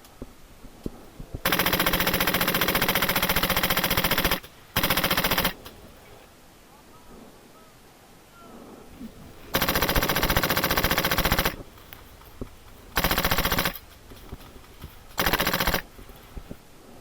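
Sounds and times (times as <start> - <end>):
airsoft gun firing bursts: 1.4 - 6.3, 9.0 - 16.6.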